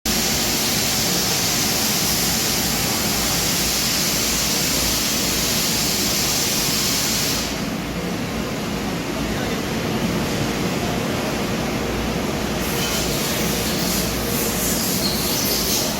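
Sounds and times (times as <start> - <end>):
vacuum cleaner rushing hiss: 0.1 - 7.8, 12.5 - 15.9.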